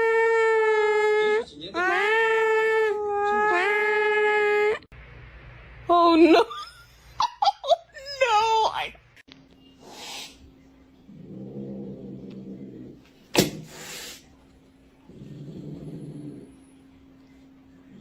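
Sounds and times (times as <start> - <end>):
cat growling: 11.1 - 13.0, 15.0 - 16.8.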